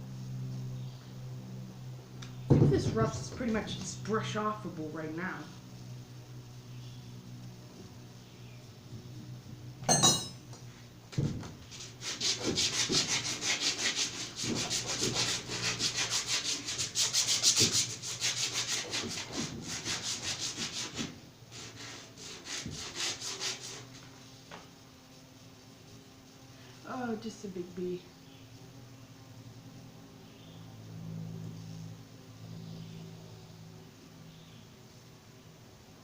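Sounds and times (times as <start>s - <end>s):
brush scrubbing metal: 11.6s - 26.3s.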